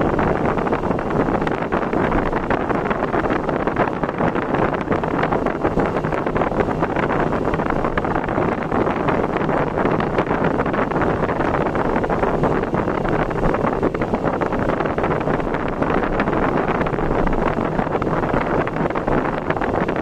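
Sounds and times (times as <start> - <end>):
wind on microphone: 0.0 - 20.0.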